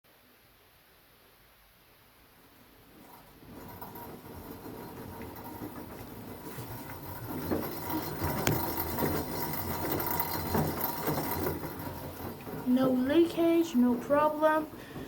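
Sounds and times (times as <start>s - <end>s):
washing machine running: 2.5s - 15.0s
washing machine knocking: 3.5s - 15.0s.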